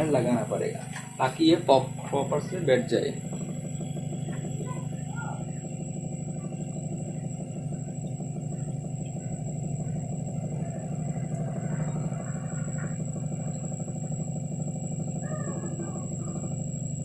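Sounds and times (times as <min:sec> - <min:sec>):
blower fan humming: 0:00.0 - 0:17.0
high electrical whine: 0:00.0 - 0:17.0.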